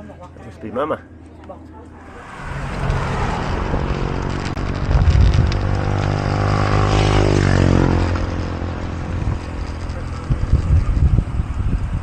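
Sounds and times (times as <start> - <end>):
vehicle engine passing by: 1.9 - 11.2.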